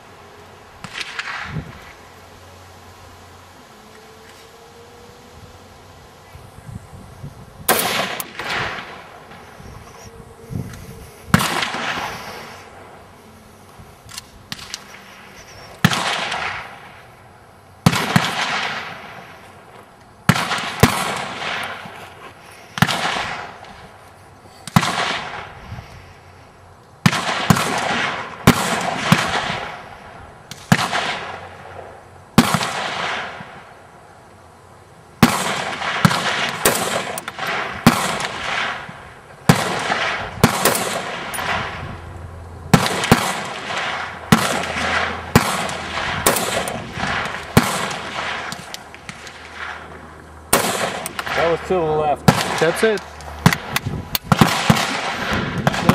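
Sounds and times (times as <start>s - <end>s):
rifle shots echoing: 0.8s - 1.5s, 7.7s - 9.5s, 11.3s - 13.0s, 15.8s - 17.0s, 17.8s - 19.3s, 20.3s - 22.0s, 22.8s - 23.8s, 24.7s - 25.5s, 27.0s - 33.7s, 35.2s - 41.9s, 42.7s - 55.9s.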